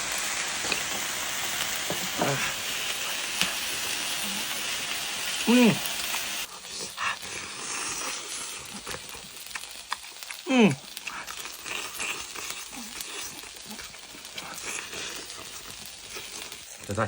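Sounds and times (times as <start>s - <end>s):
food sizzling in frying pan: 0.0s - 17.0s
person exclaiming: 2.0s - 2.6s, 5.4s - 6.0s, 10.4s - 10.8s.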